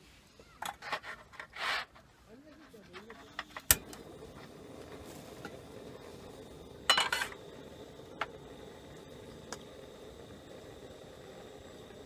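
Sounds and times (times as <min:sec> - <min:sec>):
cookware and utensils clinking: 0:06.9 - 0:07.4.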